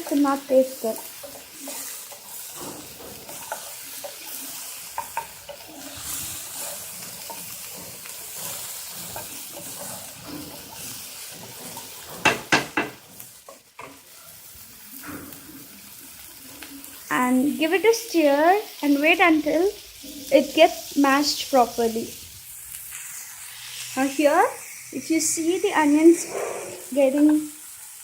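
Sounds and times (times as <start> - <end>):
spoon scraping a pan: 0.0 - 17.0
vegetables sizzling in a pan: 0.0 - 28.0
spoon knocking on a pan: 4.9 - 14.0.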